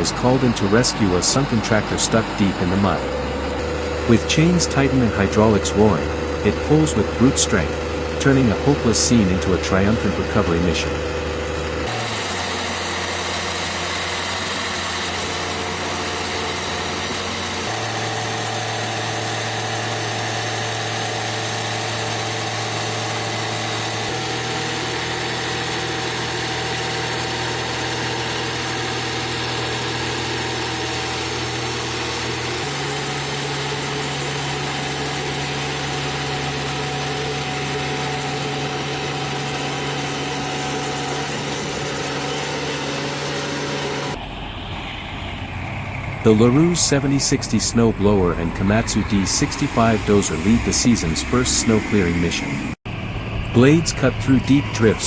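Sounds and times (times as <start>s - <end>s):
heavy machinery engines humming: 0.0s - 55.0s.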